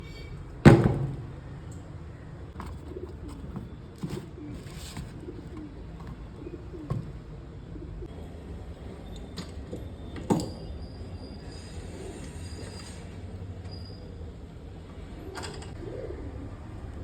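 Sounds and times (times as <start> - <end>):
birds cooing softly: 2.1 - 8.2, 15.1 - 17.0.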